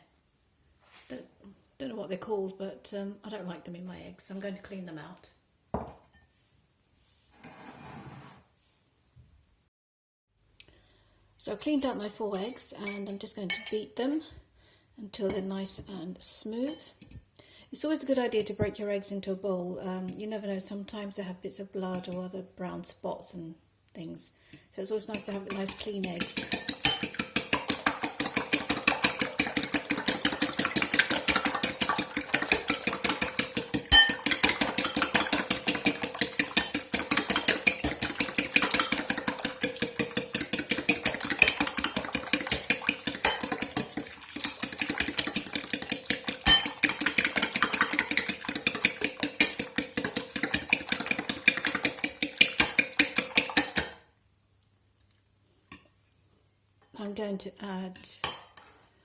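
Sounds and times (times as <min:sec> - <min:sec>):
whisk clicking against bowl: 0:25.0 - 0:54.0.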